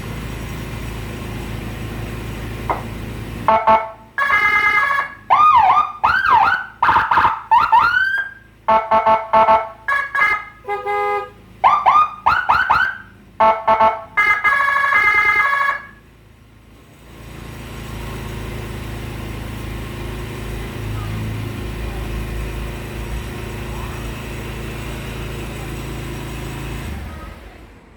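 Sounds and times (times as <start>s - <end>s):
low engine rumble: 0.0s - 27.9s
electronic siren cycling tones: 3.5s - 10.5s, 11.6s - 15.9s.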